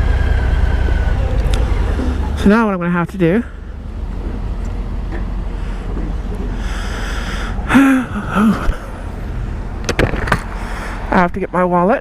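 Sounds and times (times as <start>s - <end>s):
person sighing: 6.6s - 9.0s
person groaning: 7.6s - 9.0s.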